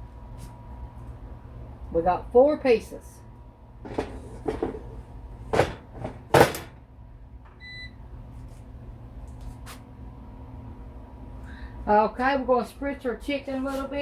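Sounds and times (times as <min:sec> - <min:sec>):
air fryer basket clunks: 0:03.8 - 0:06.8.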